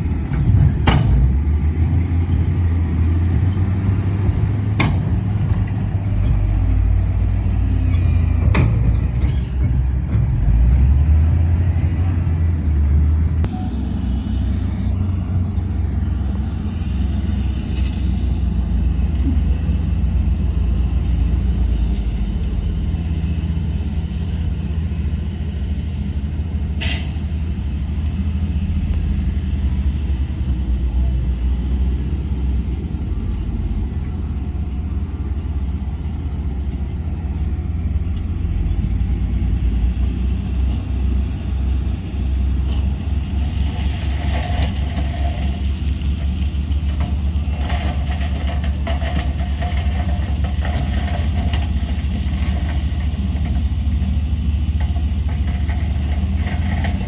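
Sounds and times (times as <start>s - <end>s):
diesel engines rumbling: 0.0s - 57.0s.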